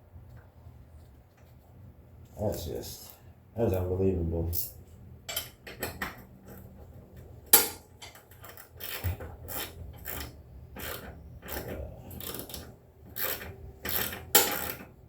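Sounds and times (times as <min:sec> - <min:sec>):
sharp metal clank: 0:07.6 - 0:07.9.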